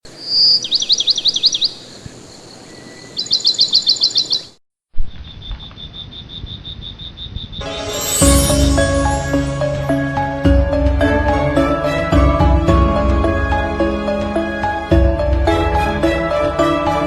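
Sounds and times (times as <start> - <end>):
music: 7.6 - 17.0.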